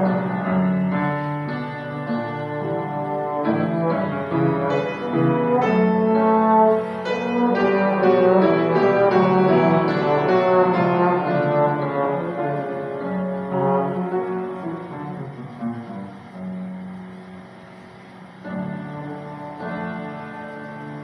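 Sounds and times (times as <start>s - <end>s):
trombone sustained notes: 0.0s - 16.4s
piano chords: 0.0s - 21.0s.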